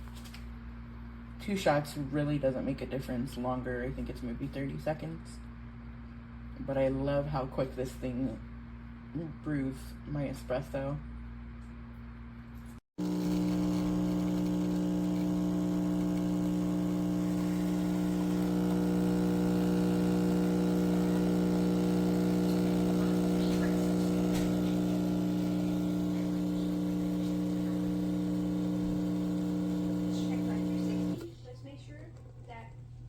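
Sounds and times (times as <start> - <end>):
espresso machine pump humming: 13.0 - 31.4.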